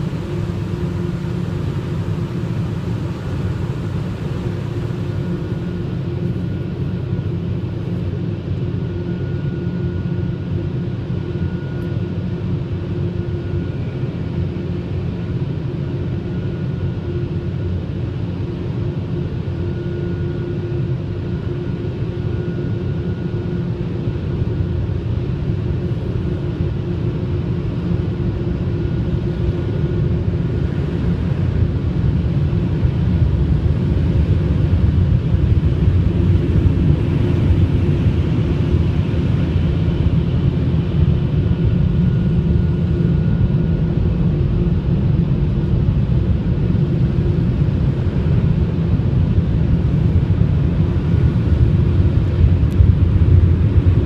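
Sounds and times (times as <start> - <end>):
low mechanical rumble: 0.0 - 10.1, 27.1 - 54.0.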